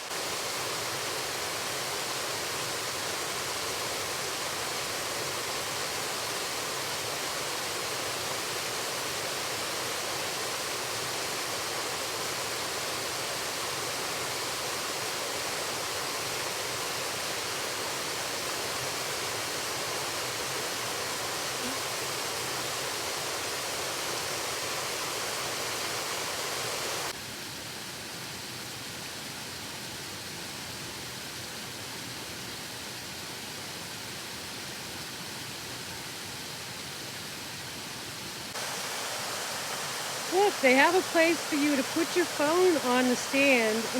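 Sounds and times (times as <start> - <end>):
waterfall rushing: 0.0 - 27.2, 38.5 - 43.9.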